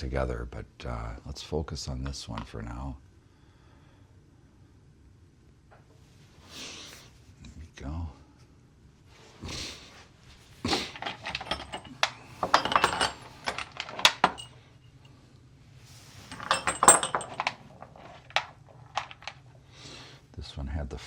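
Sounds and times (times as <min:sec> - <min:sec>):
metal screws clinking and rattling: 0:10.7 - 0:15.0, 0:16.1 - 0:19.4.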